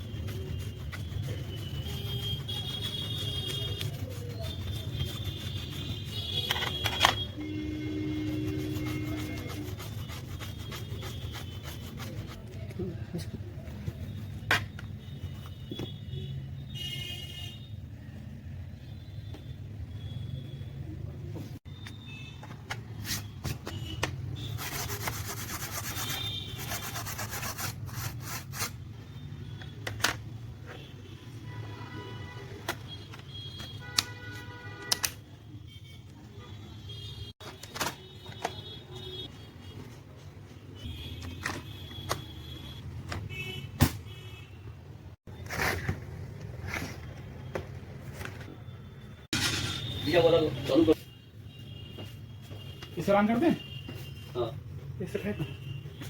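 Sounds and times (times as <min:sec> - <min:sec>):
hand rubbing or scraping: 0:00.0 - 0:07.0, 0:07.6 - 0:12.6, 0:24.4 - 0:28.8.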